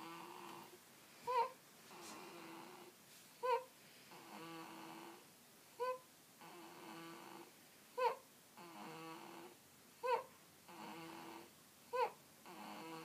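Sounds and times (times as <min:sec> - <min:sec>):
droning snore: 0:00.0 - 0:02.9, 0:04.1 - 0:05.2, 0:06.4 - 0:07.5, 0:08.6 - 0:09.6, 0:10.7 - 0:13.0.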